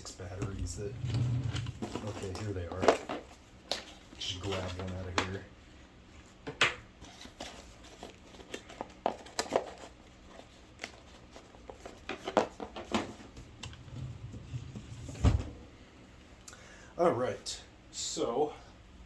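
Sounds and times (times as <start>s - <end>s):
crinkling and rustling: 0.1s - 5.5s, 7.0s - 15.6s.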